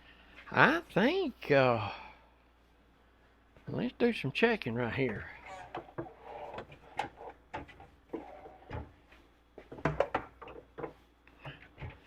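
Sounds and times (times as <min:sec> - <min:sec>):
tools knocking on workbench: 0:09.7 - 0:11.0.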